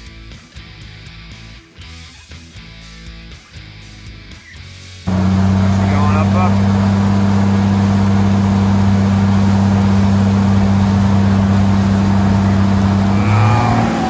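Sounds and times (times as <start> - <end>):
work lift motor humming: 5.1 - 14.0.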